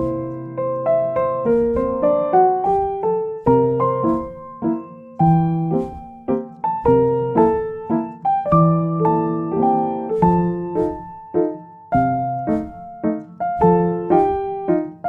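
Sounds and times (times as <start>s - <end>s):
solo piano music: 0.0s - 15.0s.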